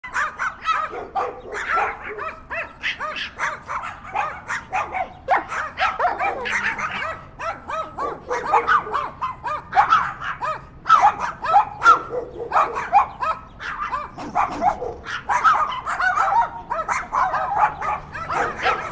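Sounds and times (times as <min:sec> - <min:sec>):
dogs barking: 0:00.0 - 0:18.9.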